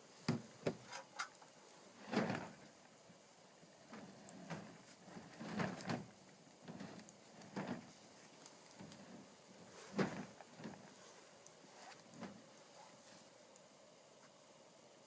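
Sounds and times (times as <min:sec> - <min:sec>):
knocks and clunks: 0:00.3 - 0:01.1, 0:02.0 - 0:02.7, 0:03.9 - 0:08.0, 0:08.7 - 0:11.0.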